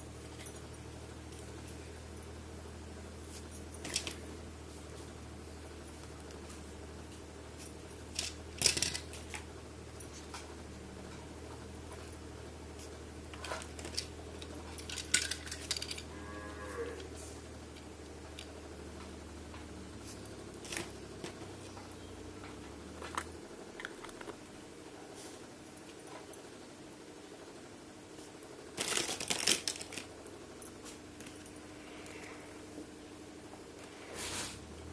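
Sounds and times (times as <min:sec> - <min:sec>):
steady low hum: 0:00.0 - 0:34.9
plastic pieces clicking: 0:08.2 - 0:09.1, 0:13.8 - 0:16.0, 0:28.8 - 0:30.1
packaging crinkling: 0:28.8 - 0:30.1.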